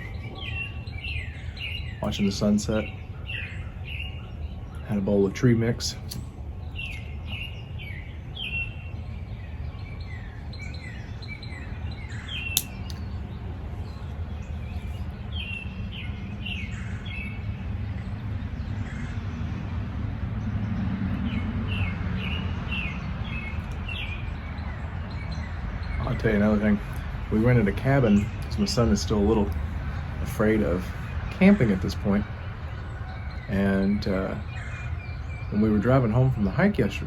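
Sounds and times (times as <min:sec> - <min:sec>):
birds chirping: 0:00.0 - 0:37.0
sharp click: 0:12.5 - 0:13.1
steady low rumble: 0:22.7 - 0:34.5.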